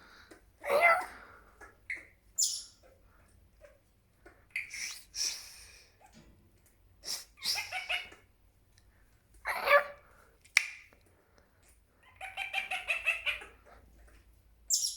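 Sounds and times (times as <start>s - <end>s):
parrot squawking: 0.6s - 2.8s, 7.4s - 8.3s, 9.5s - 10.0s, 12.0s - 13.6s.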